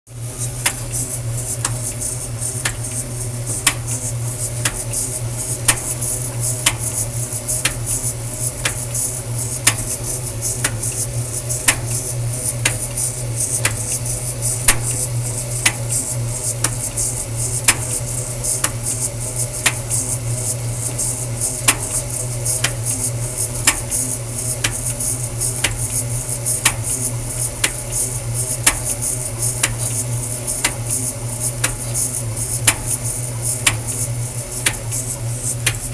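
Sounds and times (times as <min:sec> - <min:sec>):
washing machine motor hum: 0:00.1 - 0:35.9
sharp knocking click: 0:14.7 - 0:15.0.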